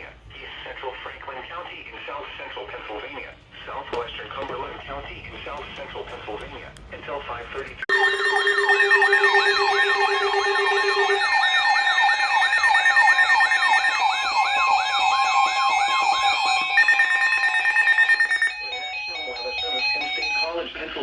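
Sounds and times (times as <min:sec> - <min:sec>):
steady tones: 0:07.8 - 0:21.0
electronic warbling alert siren: 0:07.9 - 0:21.0
fast-pulsing high tone: 0:07.9 - 0:21.0.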